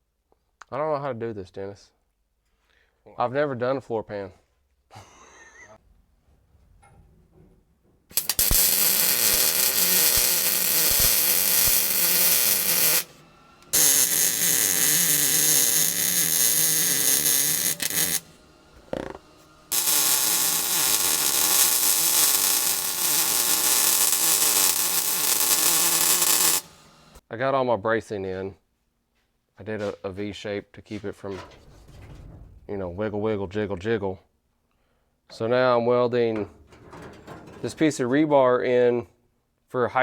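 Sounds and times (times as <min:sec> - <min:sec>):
welder hissing: 0:08.1 - 0:27.2.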